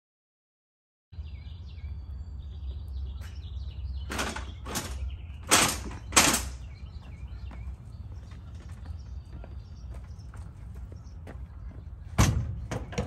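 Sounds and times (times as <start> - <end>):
small birds chirping: 1.2 - 13.0.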